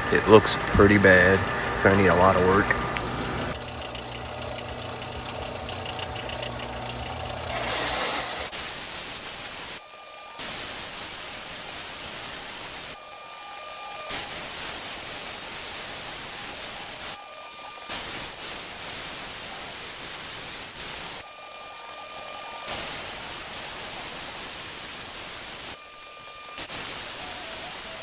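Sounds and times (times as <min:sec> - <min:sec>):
belt sander motor hum: 0:00.0 - 0:28.0
metal grinding on sanding belt: 0:00.2 - 0:28.0.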